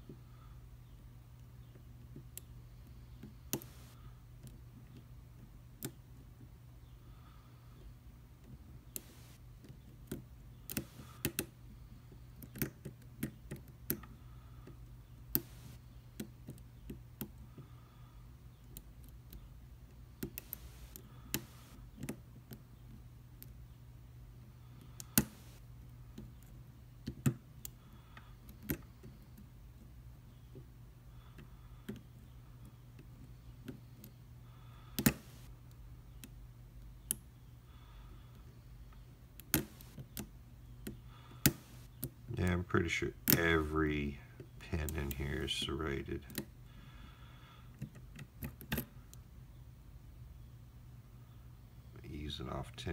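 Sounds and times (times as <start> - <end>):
steady low hum: 0.0 - 52.9
lock pick clicking on pins: 12.2 - 17.7, 18.5 - 23.7, 24.8 - 30.7, 34.8 - 37.3, 38.3 - 42.2, 47.7 - 49.3.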